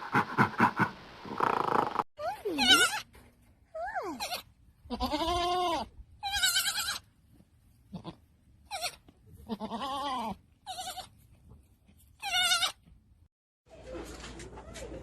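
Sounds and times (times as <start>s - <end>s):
goat bleating: 4.1s - 7.1s, 7.9s - 11.2s, 12.2s - 12.9s.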